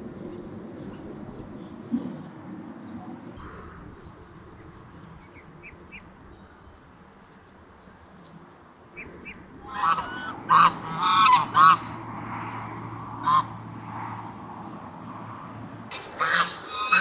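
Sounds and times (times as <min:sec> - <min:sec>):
waterfowl honking: 0:08.9 - 0:12.0, 0:13.2 - 0:13.5, 0:15.9 - 0:17.0.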